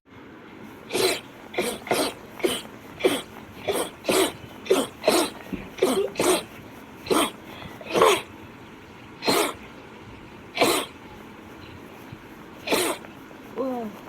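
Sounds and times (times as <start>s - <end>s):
girl sneezing rapidly: 0.9s - 8.3s, 9.2s - 9.6s, 10.6s - 11.0s, 12.6s - 13.1s.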